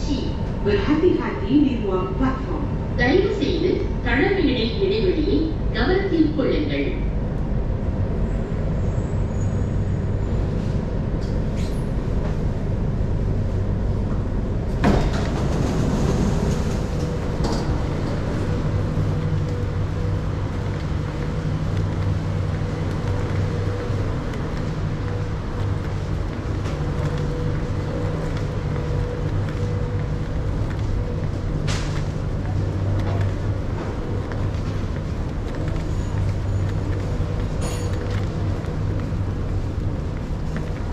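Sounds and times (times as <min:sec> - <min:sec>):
train rumble and hum: 0:00.0 - 0:40.9.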